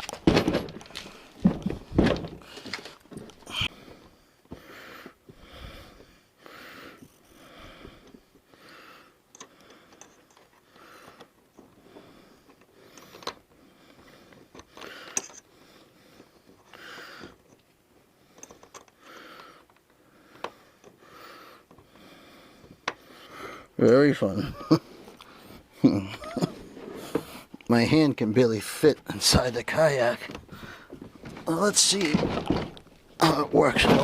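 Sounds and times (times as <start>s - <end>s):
knocks and thumps: 0.0s - 3.7s, 30.3s - 34.0s
person breathing: 2.4s - 17.4s, 18.2s - 23.8s, 24.7s - 27.6s, 30.4s - 31.2s.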